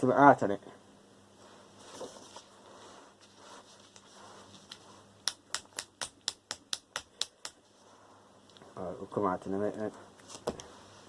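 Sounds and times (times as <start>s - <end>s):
sharp evenly spaced clicks: 5.2s - 7.6s.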